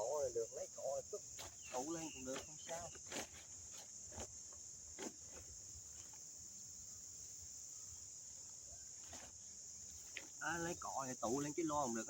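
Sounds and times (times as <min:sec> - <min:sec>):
crickets droning: 0:00.0 - 0:12.0
soft rustles: 0:08.9 - 0:10.4.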